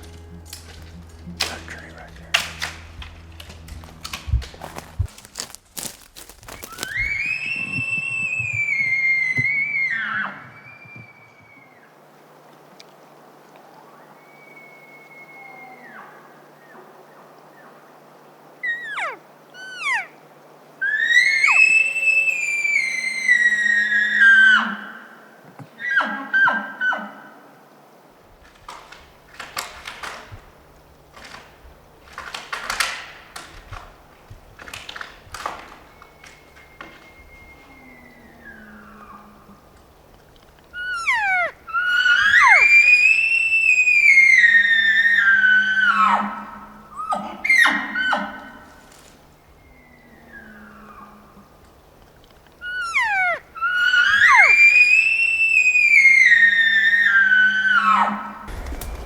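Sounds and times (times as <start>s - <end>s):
elk bugling: 0.0s - 12.5s, 13.3s - 25.2s, 28.2s - 59.0s
footsteps crunching dry leaves: 0.6s - 8.4s, 58.5s - 59.0s
faint high whistle tone: 6.9s - 11.9s, 13.9s - 16.2s, 20.8s - 24.2s, 40.8s - 41.5s.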